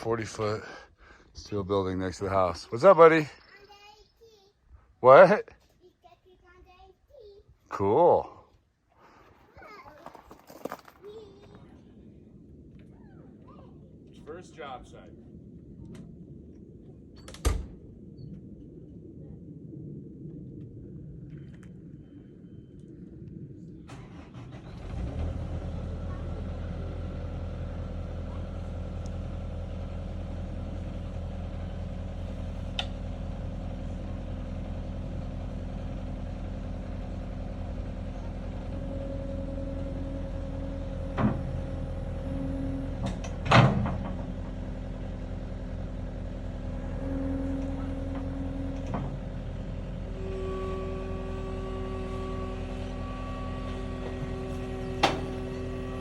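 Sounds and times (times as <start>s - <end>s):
engine running: 0.0s - 3.5s, 21.5s - 56.0s
high whine: 12.0s - 24.8s, 35.5s - 56.0s.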